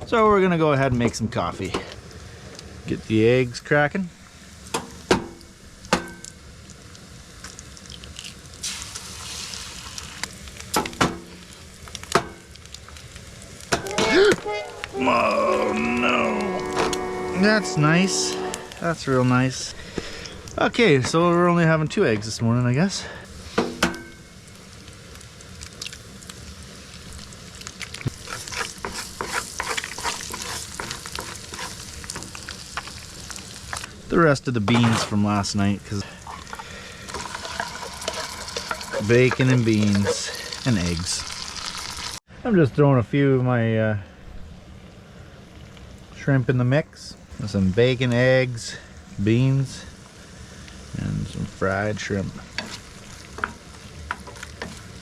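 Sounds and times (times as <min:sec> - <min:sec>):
eggs sizzling: 0:01.1 - 0:42.3, 0:45.5 - 0:55.0
sharp ticks and scrapes: 0:27.7 - 0:33.0
eggs cracked on a pan: 0:36.3 - 0:40.6.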